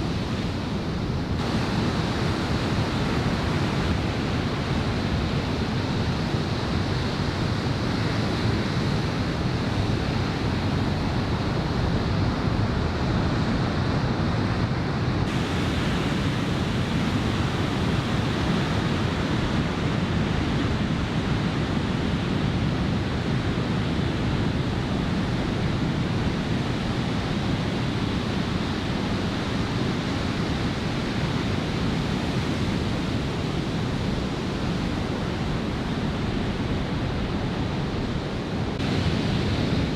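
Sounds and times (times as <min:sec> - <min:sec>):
surf breaking on beach: 0:15.3 - 0:20.8.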